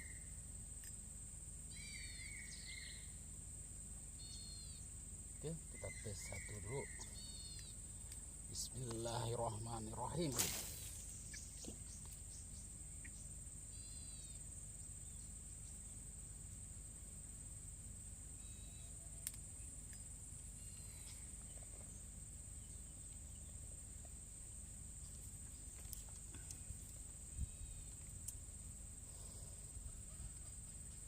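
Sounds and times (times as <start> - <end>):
insects droning: 0.0 - 31.0
short chirping calls: 4.2 - 7.8.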